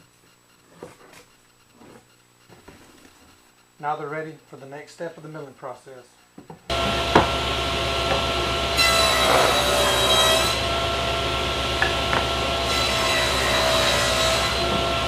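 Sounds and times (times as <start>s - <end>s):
power saw cutting wood: 6.7s - 15.0s.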